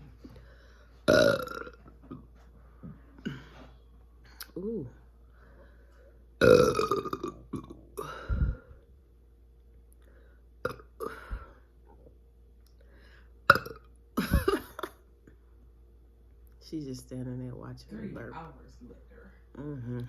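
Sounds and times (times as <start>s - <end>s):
person burping: 1.1s - 2.2s, 3.2s - 3.6s, 6.4s - 8.5s, 10.6s - 11.6s, 13.4s - 15.0s.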